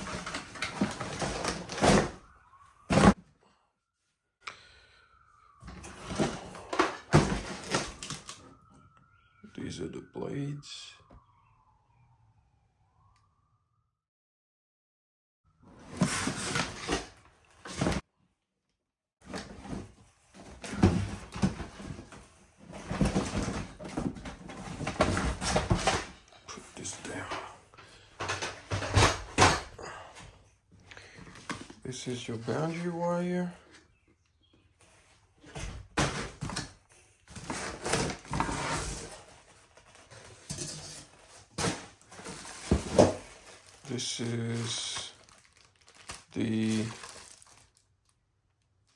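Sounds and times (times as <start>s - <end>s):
packaging rustling and clattering: 0.0s - 3.2s, 5.6s - 8.8s, 15.8s - 18.0s, 19.2s - 29.7s, 34.8s - 48.9s
packaging rustling: 37.3s - 48.9s.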